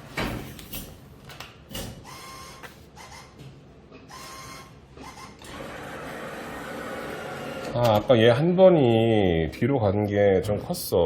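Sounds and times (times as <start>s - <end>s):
steady mechanical hum: 0.0s - 11.0s
claw machine motors whirring: 4.1s - 8.1s.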